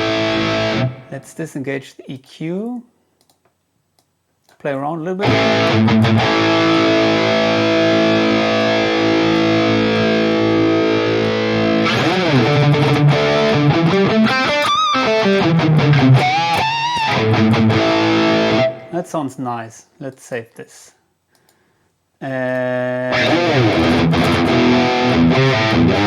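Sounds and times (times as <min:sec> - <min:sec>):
distorted electric guitar: 0:00.0 - 0:01.2, 0:05.2 - 0:19.0, 0:22.4 - 0:26.0.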